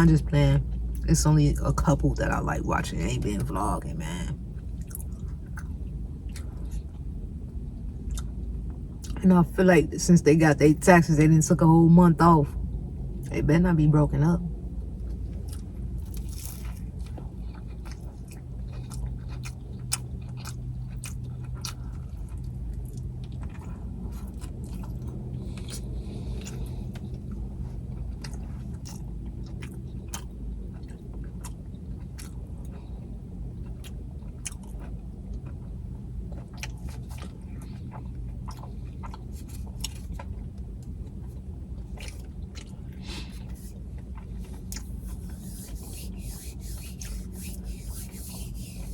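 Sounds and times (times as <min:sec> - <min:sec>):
steady low hum: 0:00.0 - 0:48.9
chewing and biting food: 0:04.5 - 0:09.2, 0:14.8 - 0:48.9.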